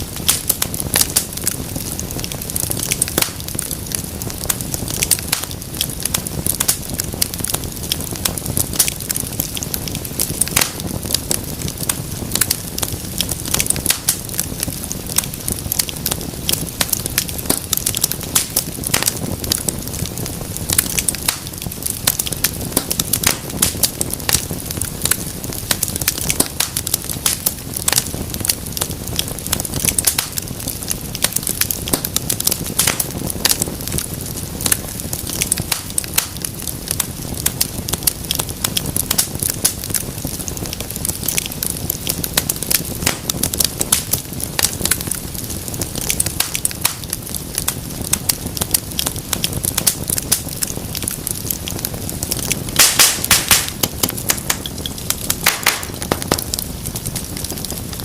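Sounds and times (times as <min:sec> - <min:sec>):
low rumble of flame: 0:00.0 - 0:58.0
wood fire crackling and popping: 0:00.0 - 0:58.0.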